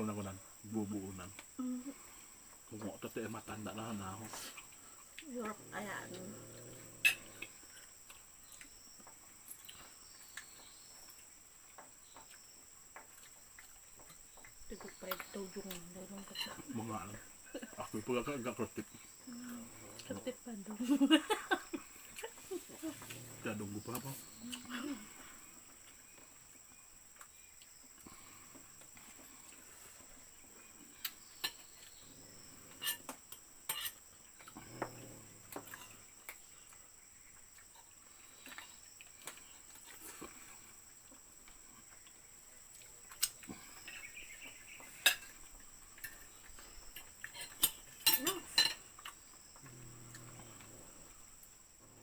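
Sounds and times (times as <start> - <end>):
cutlery clinking on plates: 47.0 - 48.9.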